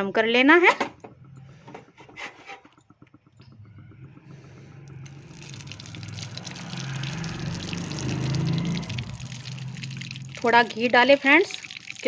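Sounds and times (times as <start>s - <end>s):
low steady hum: 0.0s - 12.0s
ghee pouring trickling hiss: 5.0s - 12.0s.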